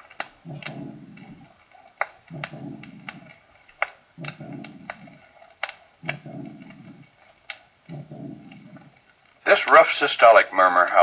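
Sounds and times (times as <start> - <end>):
sharp heart clicks: 0.0 - 9.1
heart murmur rumble: 0.4 - 3.5, 4.1 - 9.1.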